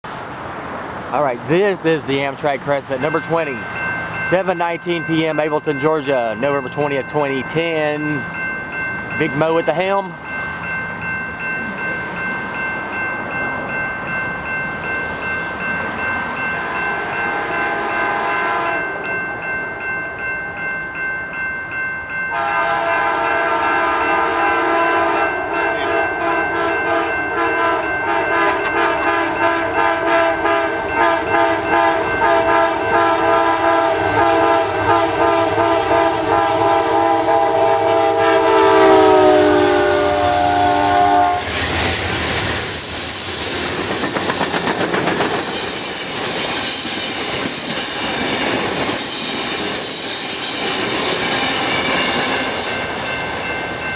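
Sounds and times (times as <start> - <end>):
train rushing by: 0.1 - 53.9
locomotive air horn chord: 16.8 - 18.9, 22.3 - 41.5.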